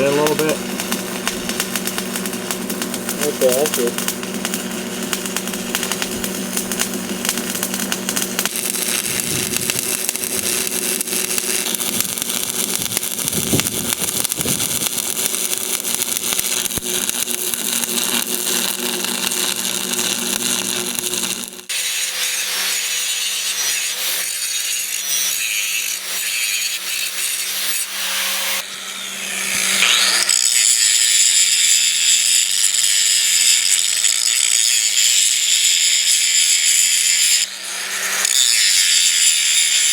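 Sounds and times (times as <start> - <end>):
welding arc crackling: 0.0 - 21.7, 38.4 - 39.9.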